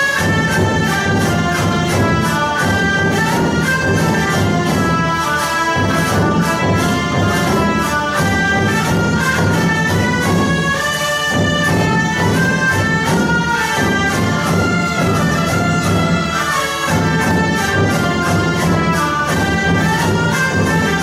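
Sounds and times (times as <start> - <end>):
orchestral music with brass: 0.0 - 21.0
steady low beat: 0.6 - 10.6.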